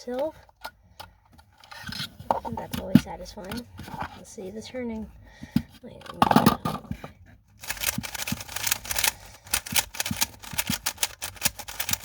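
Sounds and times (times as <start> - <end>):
speed cube clicking: 7.6 - 12.0.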